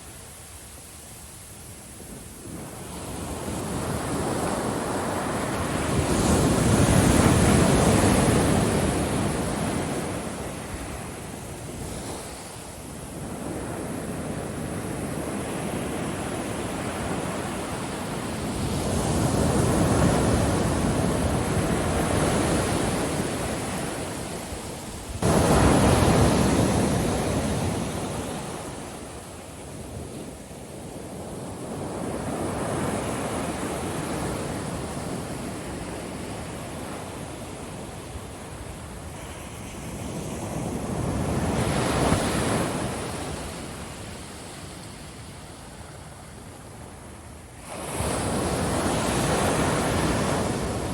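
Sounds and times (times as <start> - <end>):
ocean waves breaking: 25.2 - 29.1.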